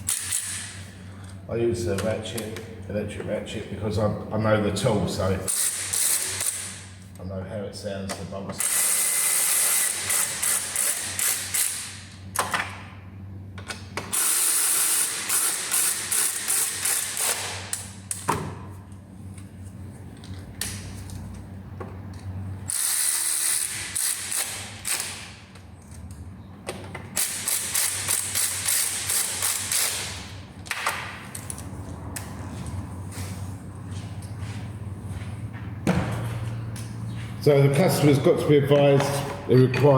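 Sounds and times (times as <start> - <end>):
electric ratchet whirring and clicking: 0.0 - 0.9, 5.5 - 6.9, 8.6 - 12.2, 14.0 - 18.2, 22.6 - 25.4, 27.1 - 30.3.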